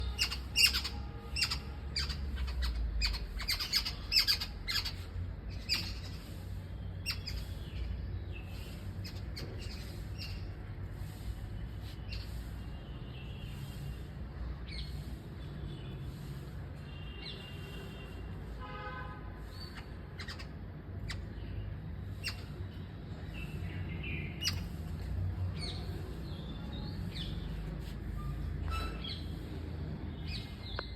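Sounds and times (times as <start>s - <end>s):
birds calling sharply: 0.0s - 14.0s, 19.4s - 30.9s.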